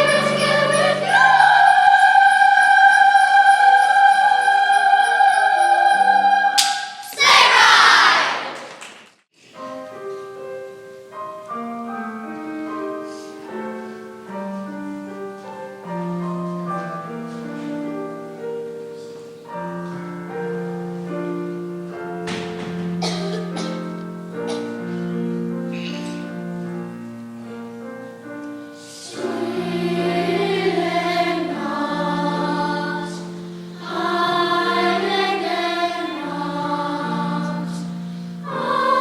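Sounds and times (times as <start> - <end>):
piano playing: 0.0 - 6.8, 9.5 - 39.0
choir singing: 0.0 - 8.7, 28.9 - 39.0
applause: 8.5 - 9.2.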